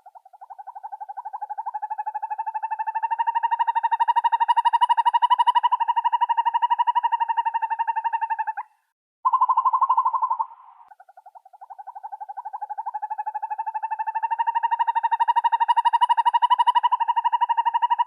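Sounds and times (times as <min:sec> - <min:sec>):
owl trilling: 0:00.0 - 0:18.0.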